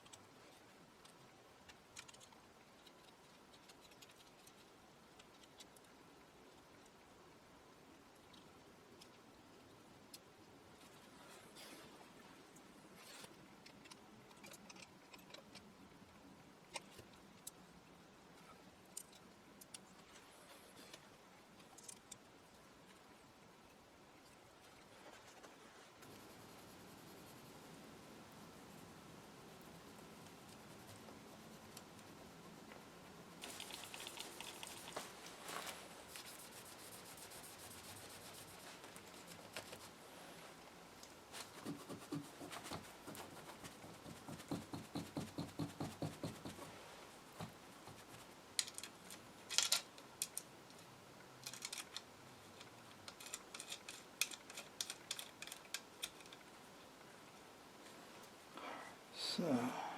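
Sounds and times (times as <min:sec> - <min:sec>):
light clicks and taps: 0:01.0 - 0:07.0.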